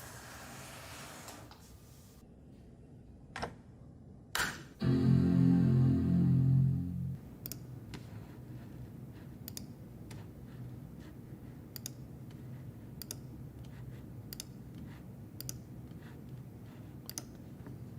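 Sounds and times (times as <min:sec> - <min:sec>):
held chord: 0:04.8 - 0:07.2
faint low hum: 0:04.8 - 0:17.9
computer clicks: 0:17.1 - 0:17.3.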